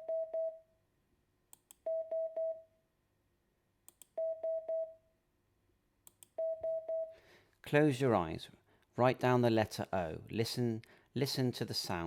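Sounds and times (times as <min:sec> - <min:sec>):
sharp clicks: 0:06.0 - 0:06.4.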